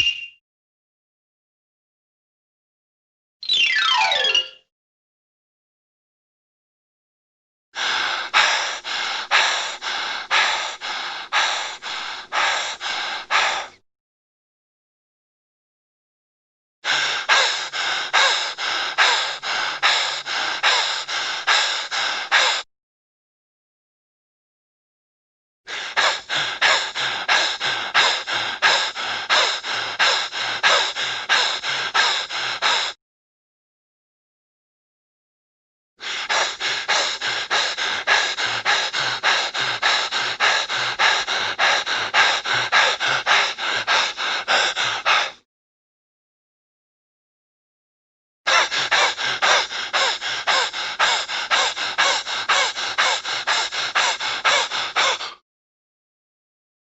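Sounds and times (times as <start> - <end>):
person breathing hard: 7.8 - 13.8, 16.8 - 22.7, 25.7 - 33.0, 36.0 - 45.5, 48.5 - 55.4
rapid panting: 7.8 - 13.8, 16.8 - 22.7, 25.7 - 33.0, 36.0 - 45.4, 48.5 - 55.4.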